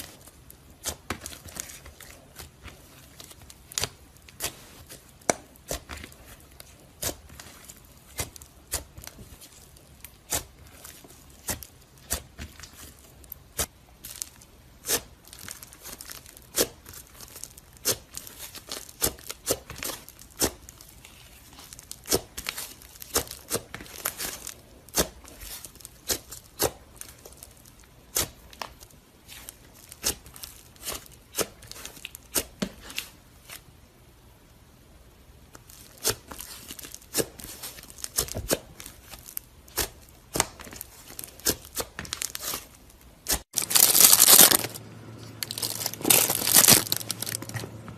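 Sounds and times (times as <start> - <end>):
slime popping and crackling: 35.7 - 47.6.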